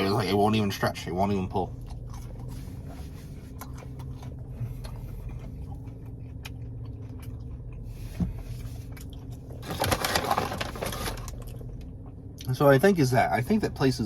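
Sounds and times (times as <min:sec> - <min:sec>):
low hum: 0:00.0 - 0:14.0
person chewing: 0:01.7 - 0:09.6.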